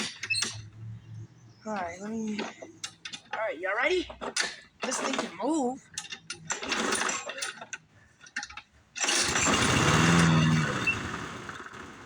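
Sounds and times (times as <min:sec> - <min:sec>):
pull cord rattle: 0:04.2 - 0:10.6
lawn mower engine running: 0:06.5 - 0:07.7, 0:09.0 - 0:12.0.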